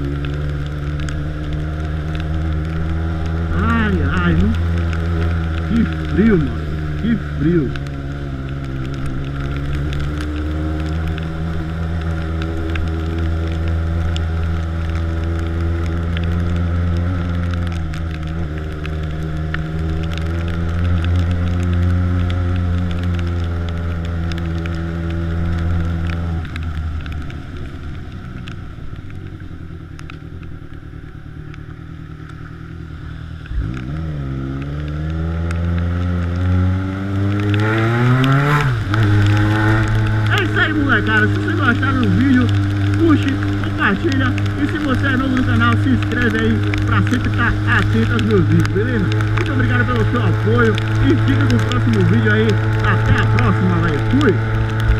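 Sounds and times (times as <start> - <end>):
motorcycle engine cruising: 0.0 - 54.9.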